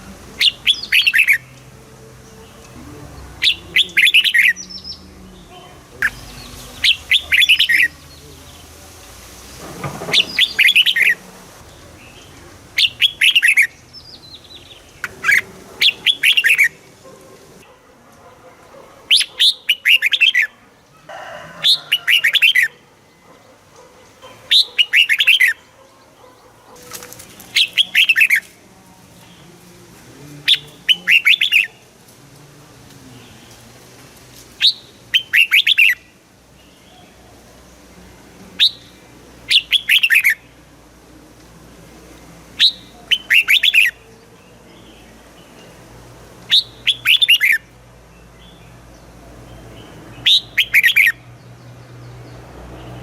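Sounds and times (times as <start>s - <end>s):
bird singing whistled notes: 0.4s - 1.5s, 3.4s - 5.0s, 6.0s - 8.2s, 10.2s - 11.2s, 12.8s - 15.4s, 30.5s - 31.7s, 34.6s - 36.0s, 38.6s - 38.9s, 39.5s - 40.5s, 42.6s - 44.0s, 46.5s - 47.7s, 50.2s - 51.2s.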